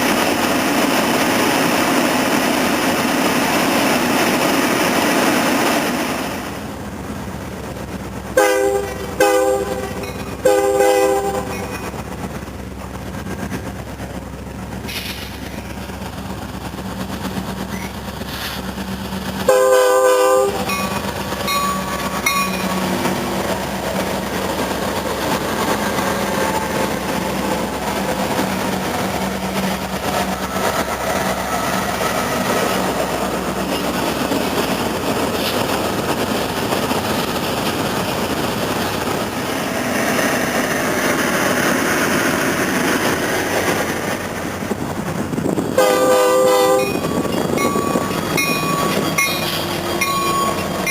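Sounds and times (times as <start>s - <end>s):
train wheels rumbling on rails: 0.0s - 50.9s
train horn blast: 8.4s - 11.7s, 19.5s - 20.7s, 45.8s - 47.0s.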